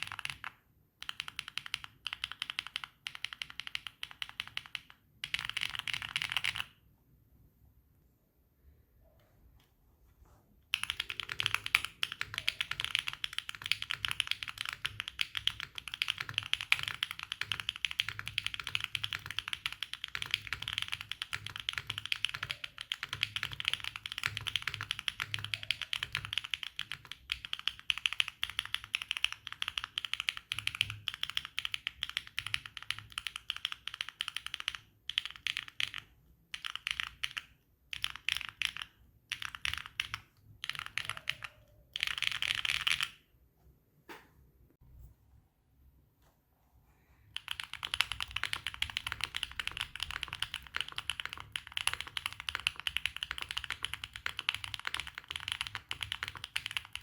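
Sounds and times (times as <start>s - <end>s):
fast typing on mechanical keyboard: 0.0s - 6.8s, 10.7s - 43.2s, 47.3s - 57.0s.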